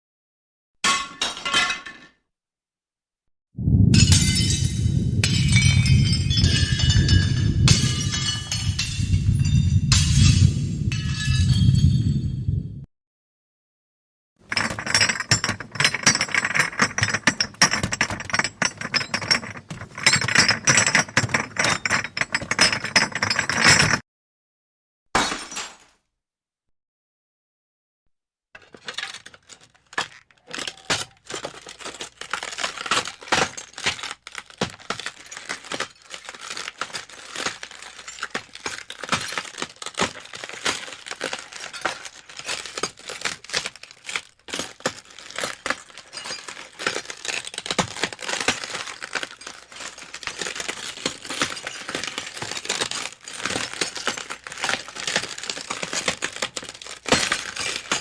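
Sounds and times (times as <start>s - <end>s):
broken glass clinking and crunching: 0.8s - 2.1s, 4.0s - 10.4s, 14.5s - 24.0s, 25.2s - 25.9s, 28.6s - 58.0s.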